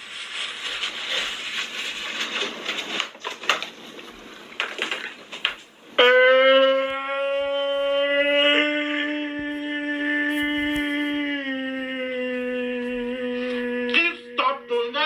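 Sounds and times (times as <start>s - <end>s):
loud long wail: 6.0s - 14.5s
man crying: 6.0s - 15.0s.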